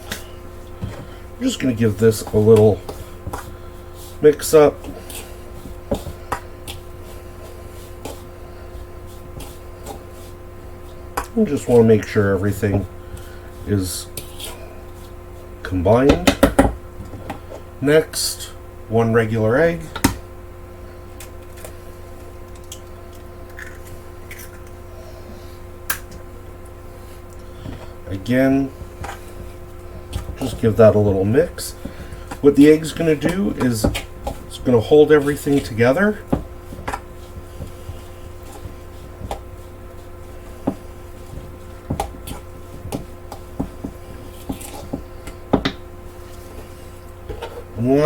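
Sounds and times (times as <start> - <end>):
steady low hum: 0.0 - 48.0
utensil knocking against mixing bowl: 40.6 - 45.8.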